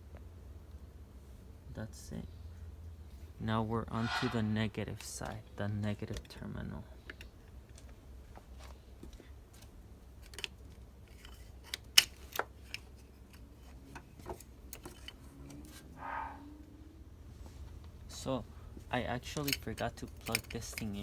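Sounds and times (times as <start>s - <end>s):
small metal hardware clinking: 14.7s - 15.2s, 19.2s - 21.0s.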